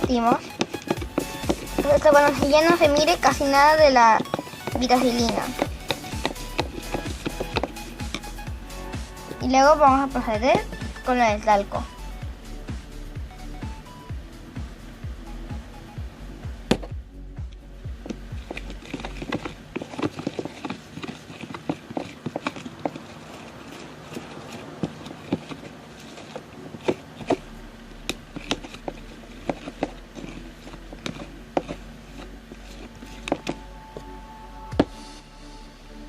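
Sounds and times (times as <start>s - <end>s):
utensil scraping a container: 0.0s - 9.4s, 10.0s - 11.2s, 18.4s - 33.6s.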